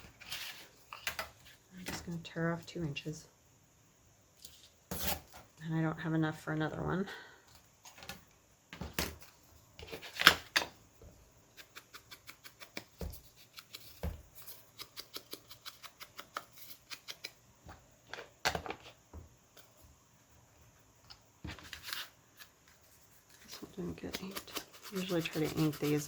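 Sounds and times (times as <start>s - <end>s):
paper rustling: 21.5s - 26.0s.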